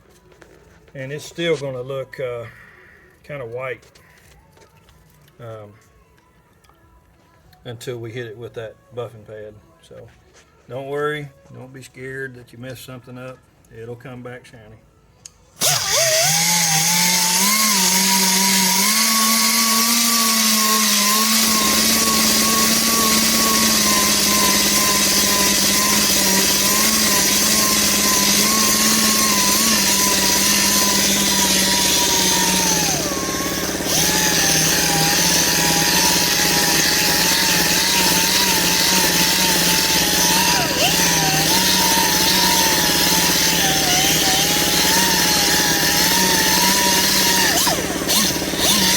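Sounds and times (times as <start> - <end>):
power sander motor whining: 15.6 - 48.9.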